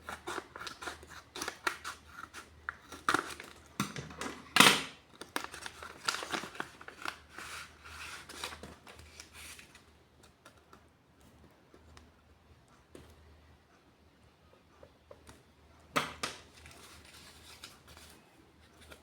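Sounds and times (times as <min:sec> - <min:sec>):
paper crinkling: 0:05.1 - 0:10.5, 0:16.4 - 0:19.0.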